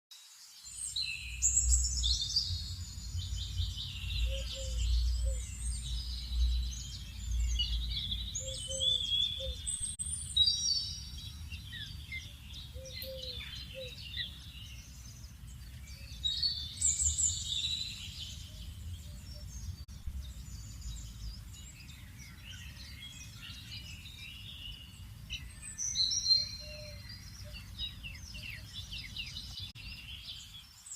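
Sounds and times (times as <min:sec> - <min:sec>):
songbirds chirping and singing: 0:00.2 - 0:30.9
low rumble: 0:01.5 - 0:08.4, 0:18.3 - 0:22.2.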